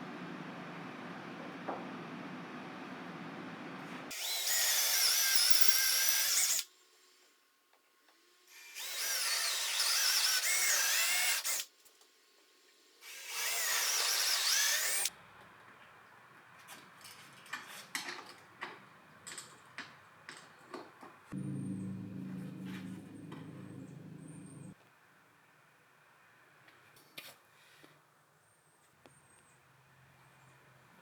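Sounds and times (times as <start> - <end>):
power drill whining: 4.1 - 6.6.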